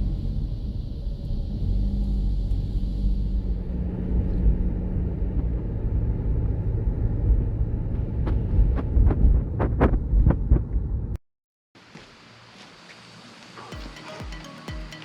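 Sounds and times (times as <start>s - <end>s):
vehicle road noise: 0.0s - 11.2s.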